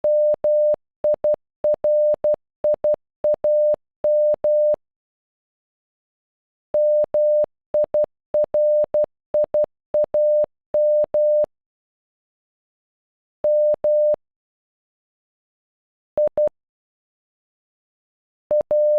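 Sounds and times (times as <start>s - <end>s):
morse code beeps: 0.0s - 4.8s, 6.8s - 11.5s, 13.5s - 14.2s, 18.5s - 18.9s.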